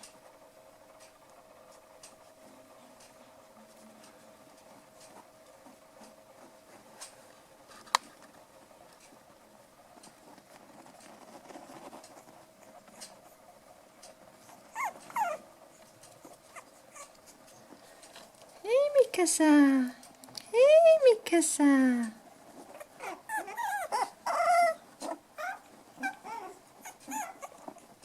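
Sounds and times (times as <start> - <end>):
puppies scuffling: 9.9 - 19.2, 22.3 - 28.0
puppy whimpering: 14.4 - 15.5, 16.2 - 17.7, 22.6 - 27.8.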